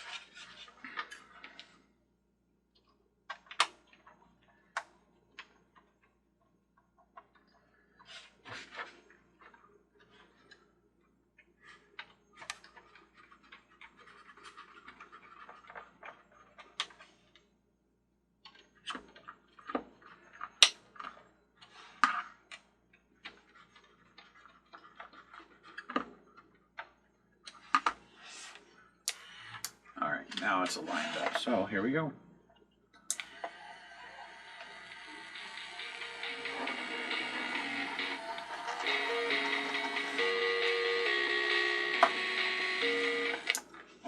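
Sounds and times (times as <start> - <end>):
plastic parts clicking and scraping: 0.0 - 1.8, 11.6 - 17.5, 18.4 - 31.6, 41.9 - 44.0.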